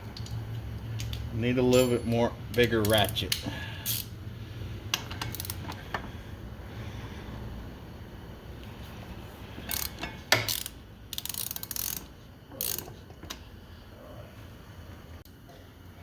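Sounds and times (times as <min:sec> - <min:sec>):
sharp metal clack: 0:01.7 - 0:02.7
socket ratchet clicking: 0:09.7 - 0:12.9.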